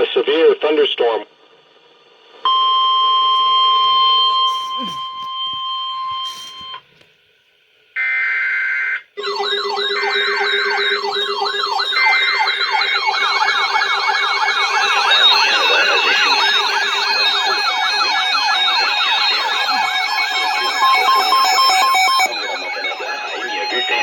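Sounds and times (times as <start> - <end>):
steady lower tone: 1.2 - 6.8, 9.2 - 24.0
electronic siren sweeps: 2.4 - 6.8, 9.2 - 24.0
steady alert tone: 9.2 - 24.0.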